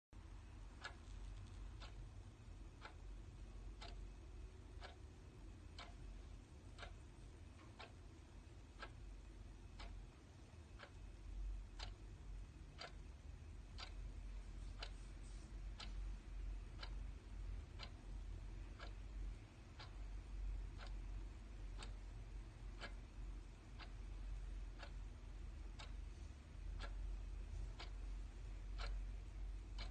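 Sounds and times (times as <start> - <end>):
clock ticking: 0.2 - 29.9
low background rumble: 0.2 - 29.9.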